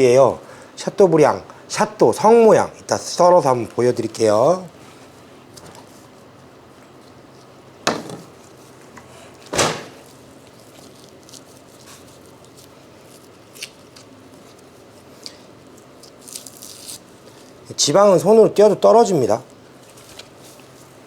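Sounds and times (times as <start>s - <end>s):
knocks on cutting board: 7.9s - 8.3s.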